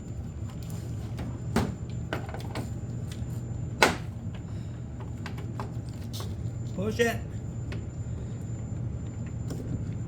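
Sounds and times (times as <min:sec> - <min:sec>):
dehumidifier humming: 0:00.0 - 0:10.0.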